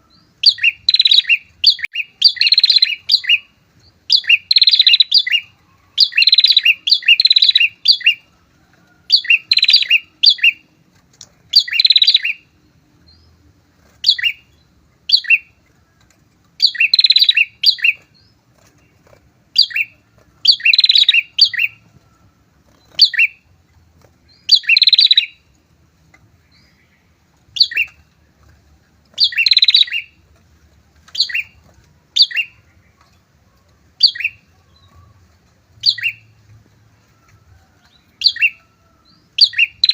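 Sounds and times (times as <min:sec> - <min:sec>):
bird chirps: 0:00.0 - 0:10.7, 0:11.5 - 0:30.3, 0:31.0 - 0:39.9
birds chattering calls: 0:00.0 - 0:39.9.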